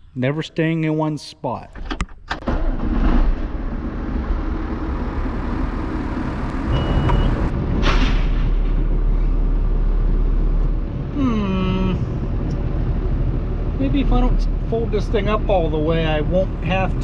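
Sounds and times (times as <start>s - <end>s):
tractor diesel engine running: 3.5s - 17.0s
short electronic beep: 6.6s - 7.5s.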